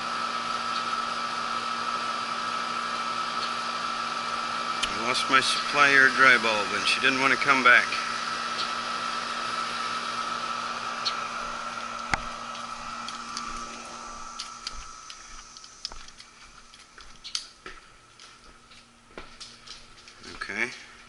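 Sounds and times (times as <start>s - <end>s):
air conditioner humming: 0.0s - 21.0s.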